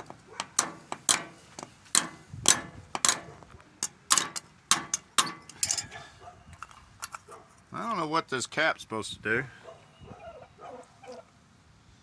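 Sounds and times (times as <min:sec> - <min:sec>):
hand tools clicking on metal: 0:00.0 - 0:06.0.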